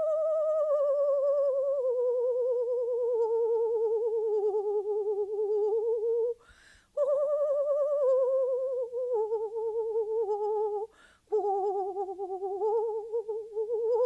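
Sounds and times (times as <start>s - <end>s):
woman breathing in: 6.4s - 7.0s, 10.9s - 11.3s.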